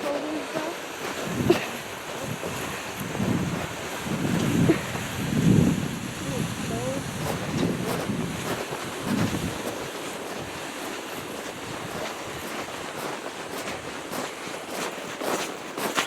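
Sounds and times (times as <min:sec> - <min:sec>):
wind noise on microphone: 0:00.0 - 0:16.0
soft crunches: 0:11.4 - 0:16.0.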